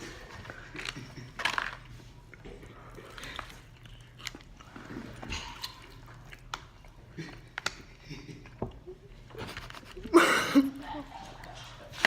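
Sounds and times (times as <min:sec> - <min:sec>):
chewing and lip smacks: 0:00.3 - 0:08.9.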